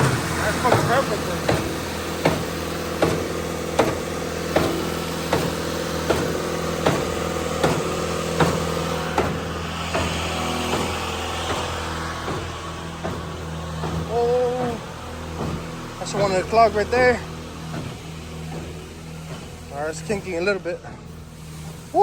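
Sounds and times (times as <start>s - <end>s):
piston clunks: 0.0s - 16.7s
pump engine droning: 0.0s - 22.0s.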